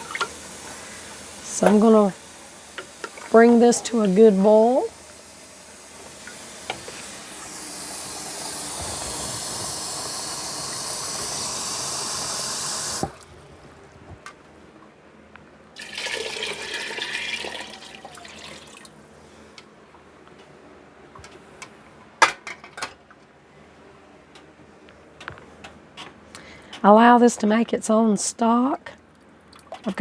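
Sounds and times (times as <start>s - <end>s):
water running into a pot: 0.0s - 13.3s, 15.8s - 19.0s.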